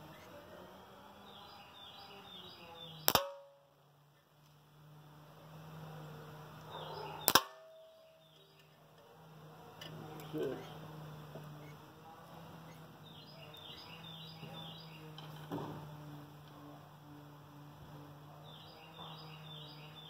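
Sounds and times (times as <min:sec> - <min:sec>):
pellet revolver shots: 0:03.0 - 0:03.6, 0:07.2 - 0:07.8.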